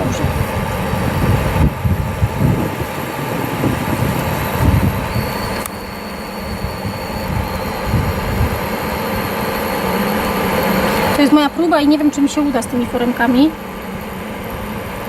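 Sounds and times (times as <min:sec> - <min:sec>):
low rumble: 0:00.0 - 0:05.6
mechanical hum and rush: 0:00.0 - 0:15.0
faint high steady tone: 0:02.6 - 0:15.0.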